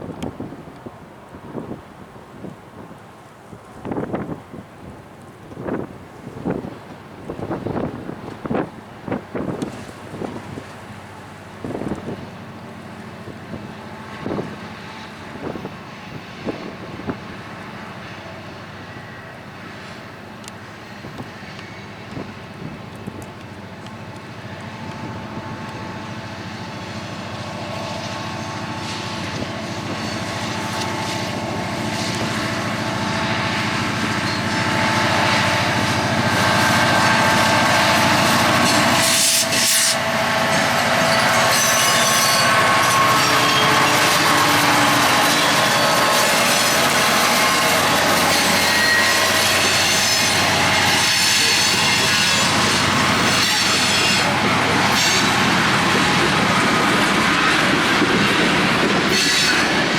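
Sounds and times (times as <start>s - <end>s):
freight train rumble: 0.0s - 59.9s
wheels squealing on rails: 23.4s - 59.9s.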